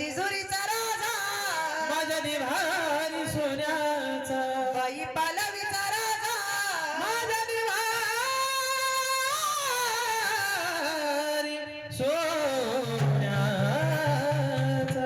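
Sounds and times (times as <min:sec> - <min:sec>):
instrumental accompaniment: 0:12.8 - 0:15.0.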